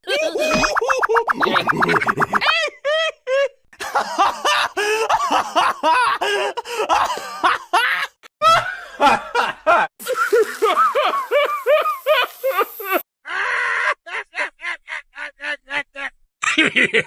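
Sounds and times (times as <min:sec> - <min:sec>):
high-pitched cartoon laughs: 0:07.8 - 0:17.0.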